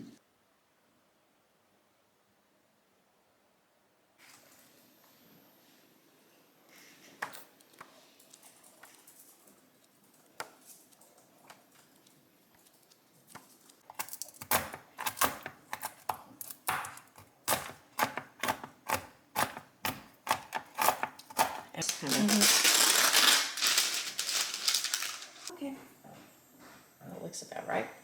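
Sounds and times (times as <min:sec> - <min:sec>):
sharp kitchen knocks: 0:14.4 - 0:21.7.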